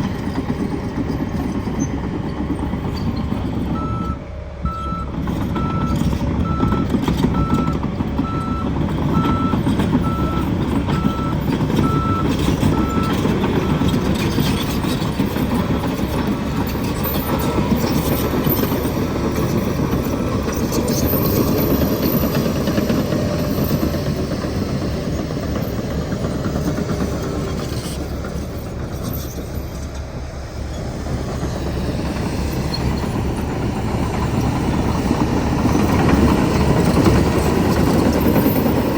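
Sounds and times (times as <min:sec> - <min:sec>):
heavy diesel vehicle running: 0:00.0 - 0:38.9
backup alarm beeping: 0:03.8 - 0:13.1.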